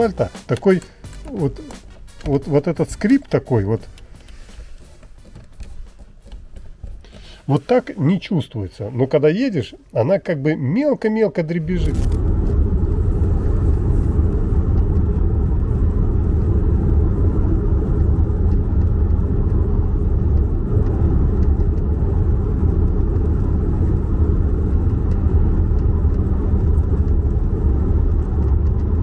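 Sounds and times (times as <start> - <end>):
tyre and road rumble: 11.4 - 29.0.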